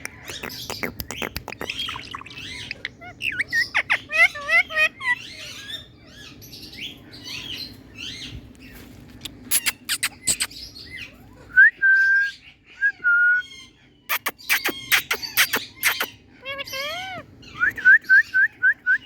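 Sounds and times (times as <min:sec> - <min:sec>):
parrot chattering: 0:00.1 - 0:05.9, 0:09.2 - 0:10.6, 0:14.1 - 0:17.7
parrot squawking: 0:00.2 - 0:06.3, 0:09.3 - 0:11.3, 0:14.1 - 0:17.8.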